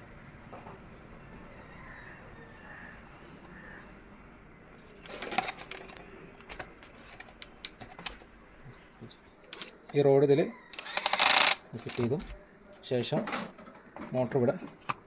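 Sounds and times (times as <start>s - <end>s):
plastic parts clicking and rattling: 4.8s - 8.3s, 9.5s - 9.9s, 10.8s - 12.4s.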